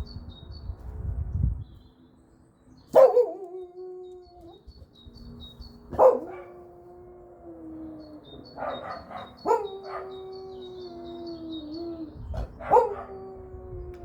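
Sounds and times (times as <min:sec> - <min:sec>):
puppy howling: 0:06.0 - 0:14.0.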